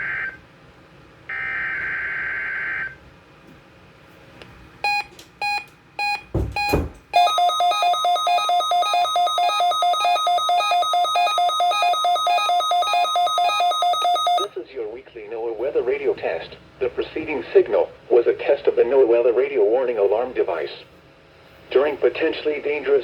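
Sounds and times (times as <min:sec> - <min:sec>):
short beeps: 0:04.9 - 0:14.5
pulsing electronic alarm: 0:06.1 - 0:14.5
screechy data tone: 0:07.2 - 0:14.5.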